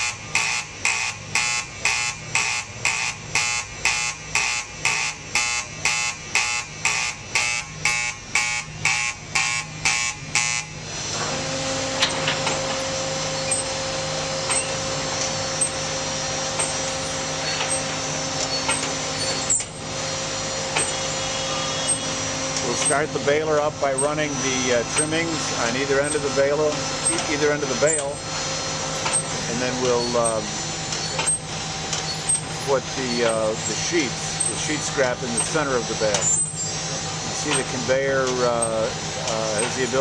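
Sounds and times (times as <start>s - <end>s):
warning buzzer pulsing: 0.0s - 10.9s, 12.8s - 28.3s
machine hum with conveyor: 0.0s - 40.0s.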